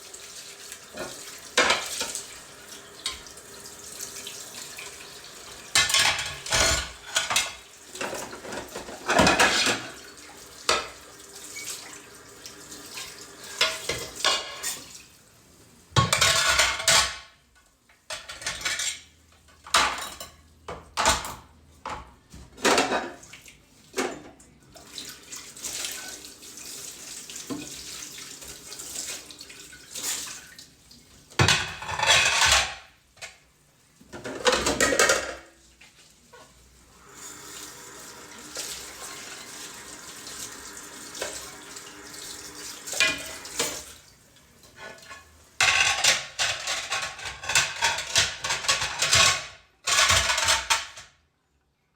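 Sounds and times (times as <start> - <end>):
water running in sink: 0.0 - 17.2, 22.6 - 32.9, 33.8 - 51.0
dishes and cutlery clattering: 0.9 - 2.2, 5.6 - 11.8, 13.0 - 15.0, 16.0 - 17.4, 18.1 - 23.2, 31.4 - 33.4, 34.1 - 35.5, 42.8 - 43.9, 44.7 - 51.1.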